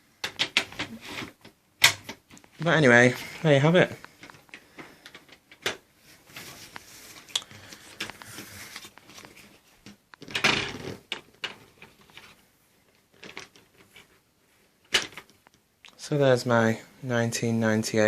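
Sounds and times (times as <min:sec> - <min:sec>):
objects clicking and knocking: 0:00.2 - 0:02.5, 0:07.3 - 0:12.4, 0:13.1 - 0:14.2, 0:14.9 - 0:15.6.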